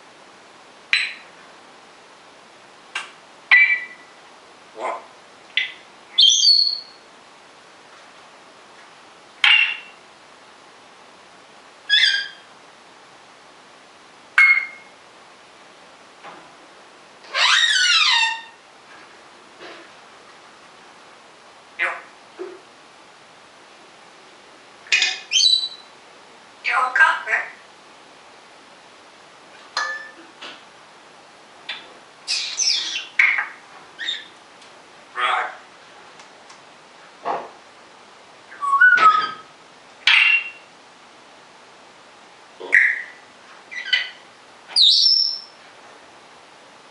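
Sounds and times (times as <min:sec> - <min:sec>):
parrot whistled calls: 0:05.6 - 0:07.0, 0:11.9 - 0:12.5, 0:14.4 - 0:14.9, 0:17.4 - 0:18.6, 0:25.1 - 0:25.9, 0:32.3 - 0:34.3, 0:38.5 - 0:39.5, 0:42.7 - 0:44.2, 0:44.8 - 0:45.5.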